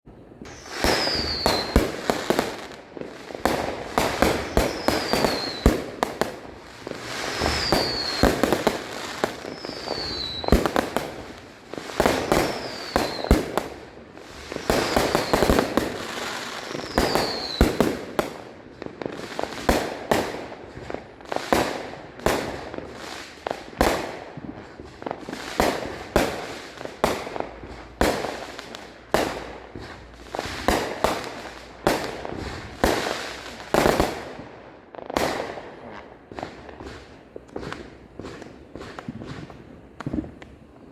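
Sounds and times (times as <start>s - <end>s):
fireworks bangs and crackles: 0.1s - 40.9s
falling whistle: 0.6s - 1.8s.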